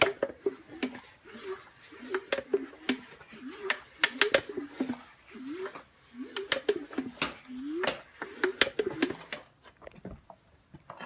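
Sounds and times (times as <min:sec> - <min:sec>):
outboard motor sharp clicks: 0:02.0 - 0:09.4.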